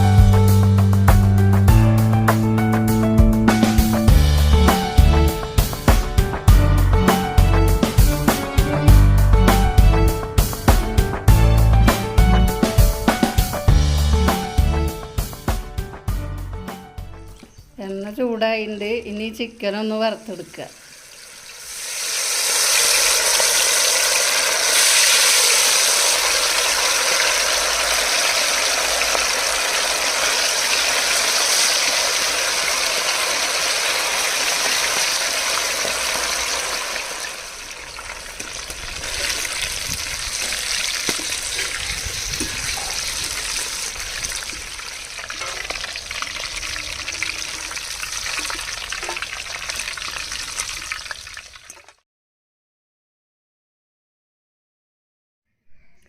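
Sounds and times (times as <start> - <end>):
chicken sizzling in oil: 20.0 - 52.0
oil popping: 20.1 - 52.0.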